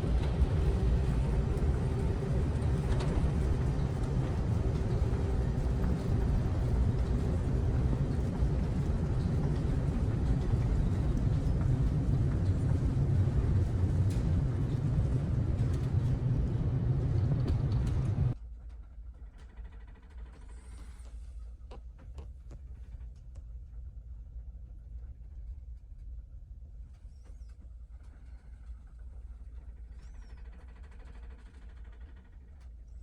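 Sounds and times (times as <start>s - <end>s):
vehicle rumble with rushing hiss: 0.0s - 18.4s.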